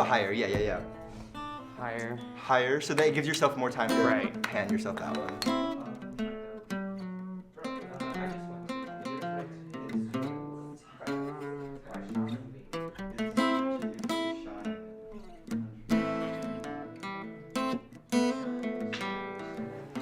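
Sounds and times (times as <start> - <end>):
acoustic guitar picking and strumming: 0.0 - 20.0.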